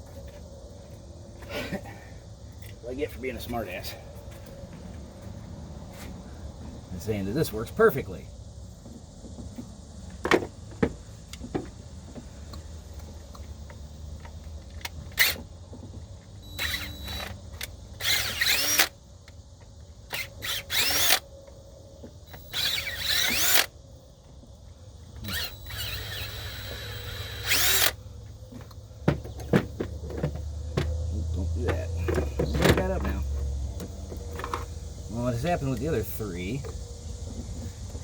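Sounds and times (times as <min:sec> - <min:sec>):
cordless drill whining: 0:16.4 - 0:17.4, 0:18.0 - 0:19.0, 0:20.1 - 0:21.2, 0:22.3 - 0:23.7, 0:25.2 - 0:28.0.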